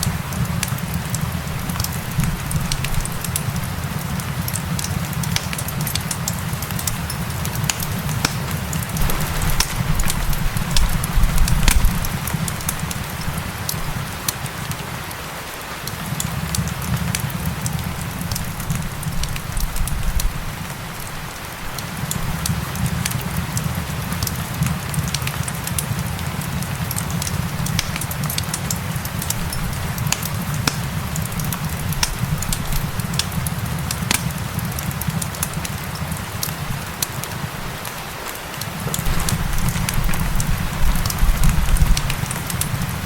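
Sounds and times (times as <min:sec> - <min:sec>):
steady rain: 0:00.0 - 0:43.0
wood fire crackling and popping: 0:00.0 - 0:43.0.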